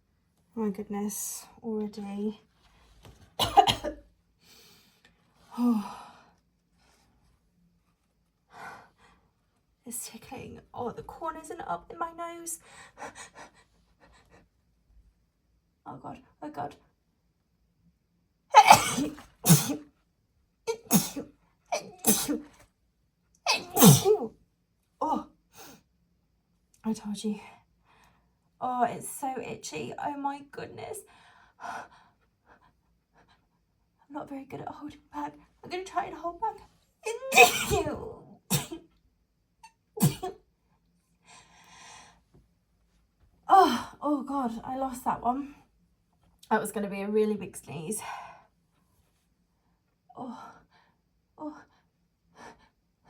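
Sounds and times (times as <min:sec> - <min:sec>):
woman sneezing: 0:03.4 - 0:03.9, 0:18.6 - 0:19.8, 0:20.7 - 0:22.5, 0:23.5 - 0:24.3, 0:37.1 - 0:38.8, 0:40.0 - 0:40.4.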